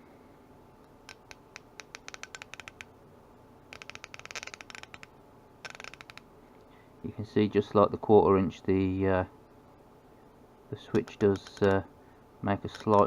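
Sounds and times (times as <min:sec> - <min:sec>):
ratchet clicking: 0:01.1 - 0:02.9, 0:03.7 - 0:06.2.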